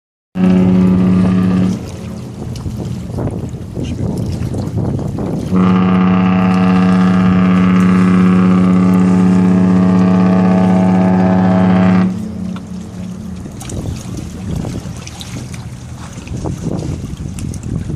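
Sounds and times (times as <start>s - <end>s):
ship's horn blast: 0.4s - 3.5s, 5.4s - 16.0s
wind noise on microphone: 0.4s - 17.9s.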